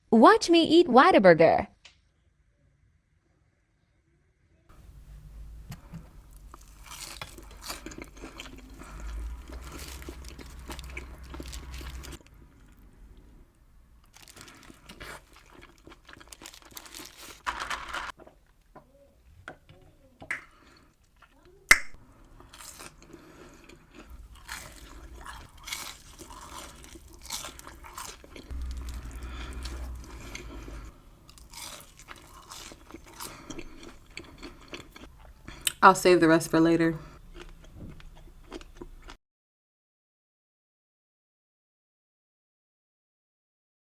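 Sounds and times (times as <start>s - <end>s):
chewing and crunching burger: 5.3s - 13.2s, 14.0s - 18.4s, 20.6s - 35.8s, 36.9s - 39.2s.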